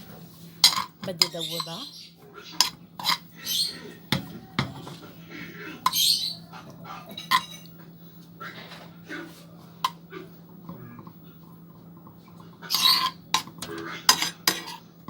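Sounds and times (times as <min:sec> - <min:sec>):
metal spoon clinking in a pan: 0:07.1 - 0:07.7.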